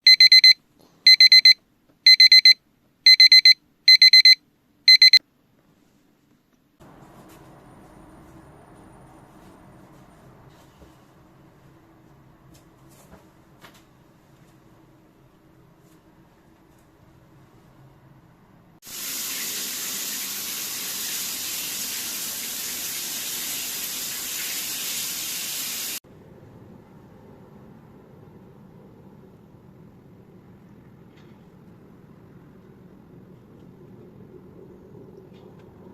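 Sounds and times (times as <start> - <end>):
electronic alarm beeping: 0.0 - 5.2
tap water running into sink: 18.9 - 26.0.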